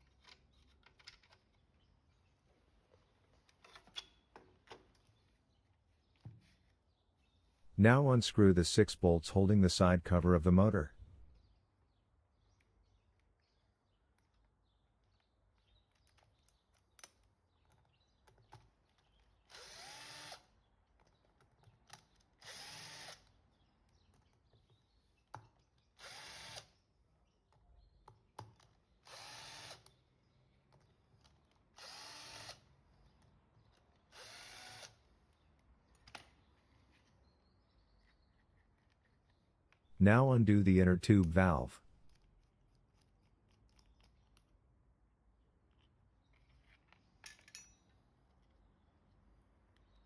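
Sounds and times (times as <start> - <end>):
cordless drill whirring: 19.5 - 20.4, 22.4 - 23.2, 26.0 - 26.7, 29.1 - 29.9, 31.8 - 32.7, 34.1 - 35.0.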